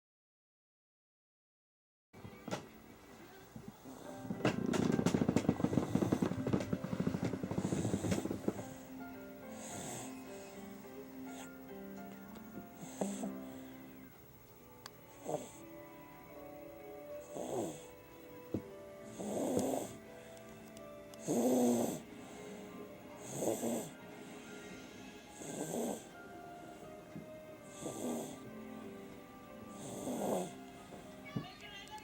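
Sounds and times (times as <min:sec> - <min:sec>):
soft background music: 0:02.2 - 0:32.0
baby snoring: 0:03.8 - 0:11.7, 0:12.6 - 0:14.1, 0:15.1 - 0:15.8, 0:17.2 - 0:18.1, 0:19.0 - 0:20.4, 0:21.2 - 0:31.2.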